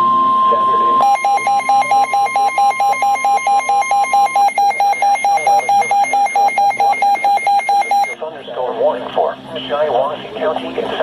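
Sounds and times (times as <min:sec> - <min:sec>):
rapid electronic alarm beeps: 0:00.0 - 0:08.2
steady high alarm tone: 0:00.0 - 0:08.2.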